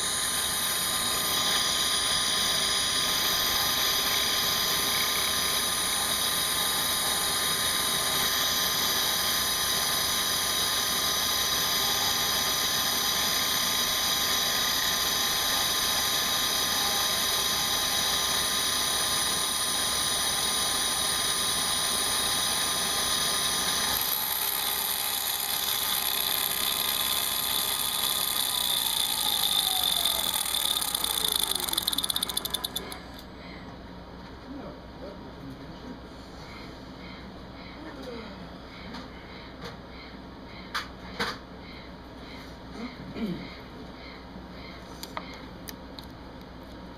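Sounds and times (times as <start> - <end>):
milling machine whining: 0.0 - 33.3.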